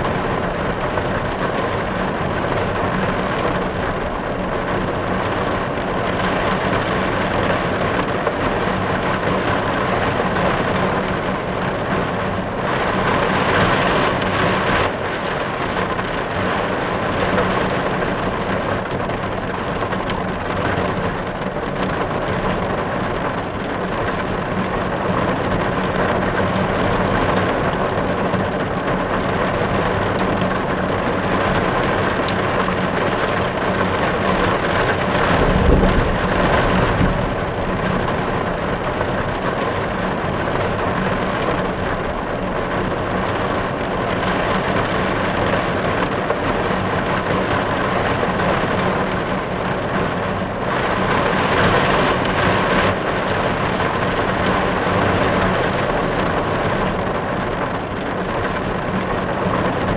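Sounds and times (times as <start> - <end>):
rain falling on a car: 0.0 - 59.9
low rumble: 34.8 - 39.8.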